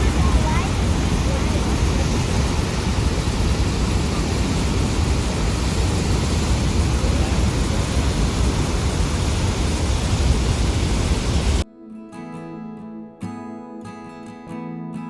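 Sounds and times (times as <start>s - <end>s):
waterfall roaring: 0.0s - 11.6s
wind buffeting microphone: 0.0s - 11.6s.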